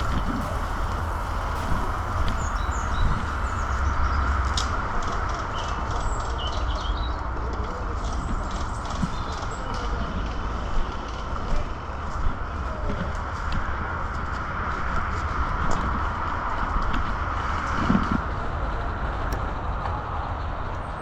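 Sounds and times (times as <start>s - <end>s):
footsteps: 0.0s - 4.8s
wind buffeting microphone: 0.0s - 21.0s.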